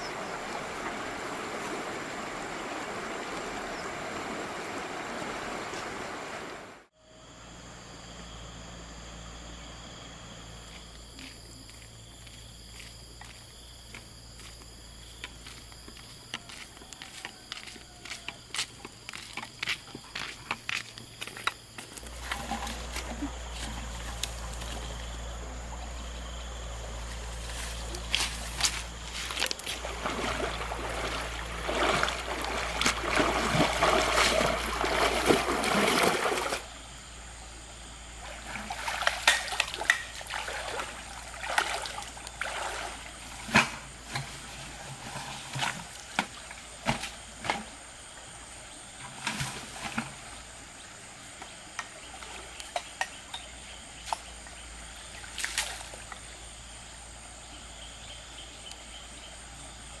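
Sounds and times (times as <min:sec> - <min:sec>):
water splashing and sloshing: 0:00.0 - 0:06.9, 0:18.5 - 0:37.0, 0:37.9 - 0:56.6
small splashes and drips: 0:29.4 - 0:36.6, 0:38.2 - 0:43.2.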